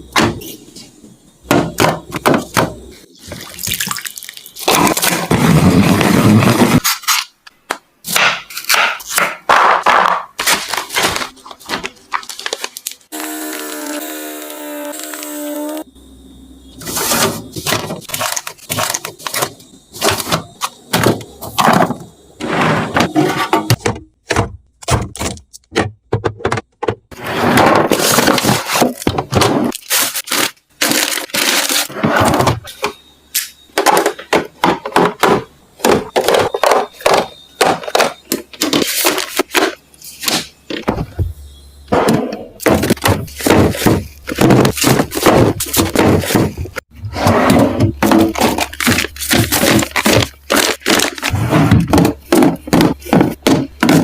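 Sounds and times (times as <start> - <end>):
containers knocking and clacking: 23.0 - 27.1, 47.5 - 54.0.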